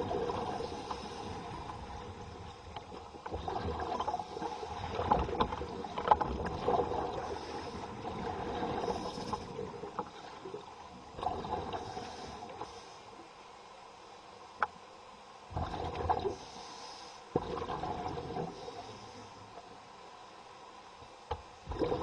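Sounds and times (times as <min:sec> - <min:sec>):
diver breathing through a regulator: 0:00.0 - 0:01.9, 0:06.6 - 0:10.0, 0:11.2 - 0:13.2, 0:15.5 - 0:19.7.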